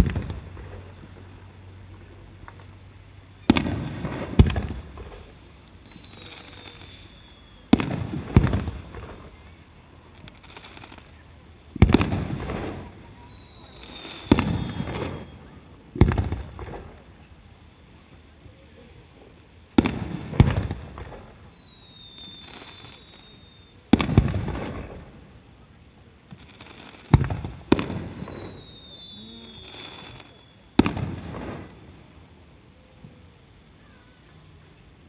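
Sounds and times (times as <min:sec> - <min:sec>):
firework bangs: 0:00.0 - 0:17.7, 0:19.6 - 0:33.2
firework whistle sliding down: 0:04.4 - 0:07.8, 0:12.0 - 0:15.5, 0:20.6 - 0:23.8, 0:27.4 - 0:30.8.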